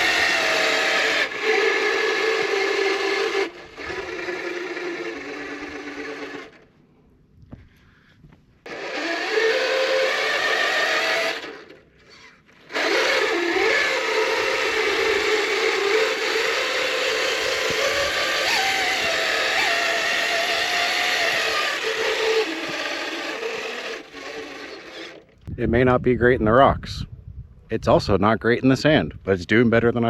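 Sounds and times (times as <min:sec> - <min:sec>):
electric motor and gearbox whining: 0:00.0 - 0:07.0, 0:08.6 - 0:25.5.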